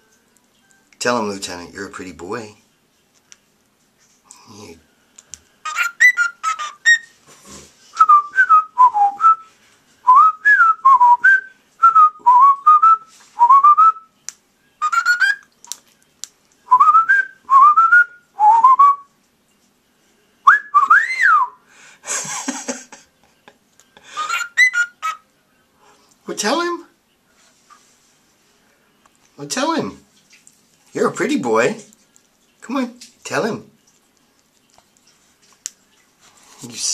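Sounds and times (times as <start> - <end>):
cockatiel whistling: 5.6 - 7.1, 14.8 - 15.5, 20.5 - 21.5, 24.2 - 25.2.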